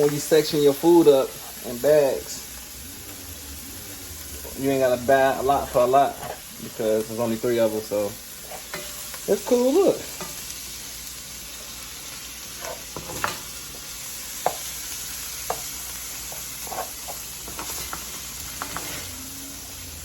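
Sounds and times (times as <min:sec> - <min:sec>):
food sizzling in a pan: 0:00.0 - 0:20.0.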